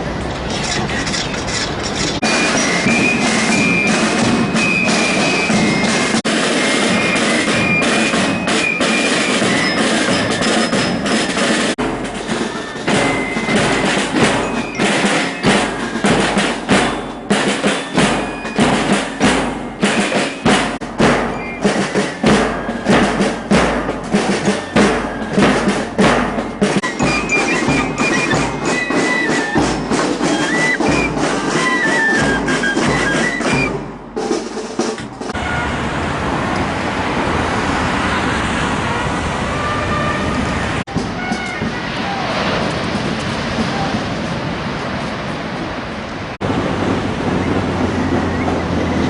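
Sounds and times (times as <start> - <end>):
high melody of held notes: 2.2 - 34.3
drum beat: 2.2 - 35.4, 40.8 - 44.4.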